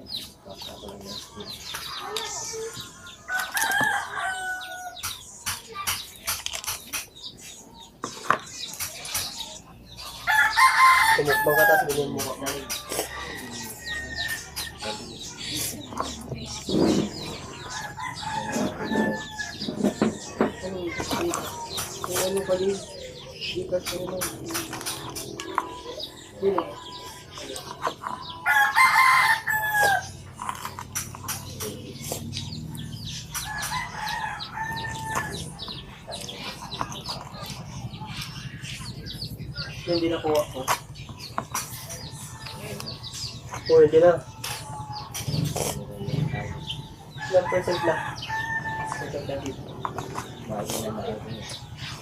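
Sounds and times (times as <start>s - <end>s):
chickens clucking: 0.0s - 52.0s
rooster crowing: 3.3s - 5.0s, 10.3s - 11.9s, 28.4s - 30.0s, 33.5s - 35.5s.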